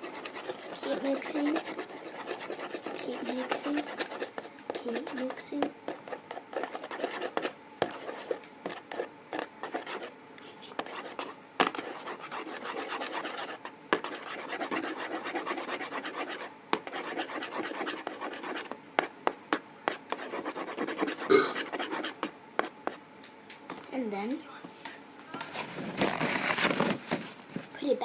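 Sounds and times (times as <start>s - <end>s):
slime stirred and scraped: 0.0s - 19.2s, 19.9s - 22.3s.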